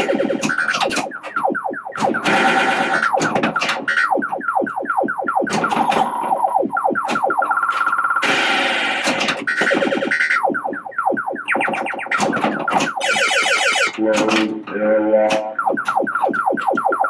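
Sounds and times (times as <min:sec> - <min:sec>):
pinball machine clicks: 0:11.6 - 0:16.8.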